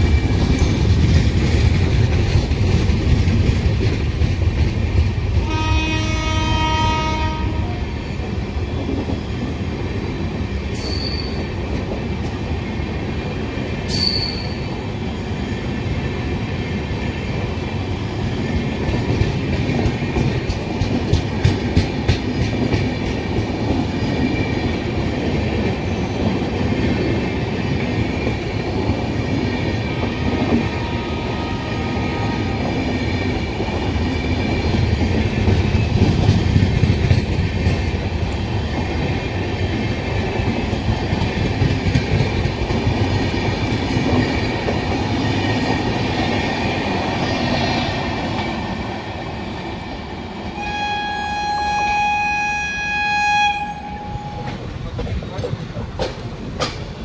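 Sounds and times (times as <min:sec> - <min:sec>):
train wheels clattering on rails: 0:00.0 - 0:50.6, 0:54.0 - 0:57.0
train horn: 0:05.4 - 0:08.0, 0:30.1 - 0:33.0, 0:50.5 - 0:54.6.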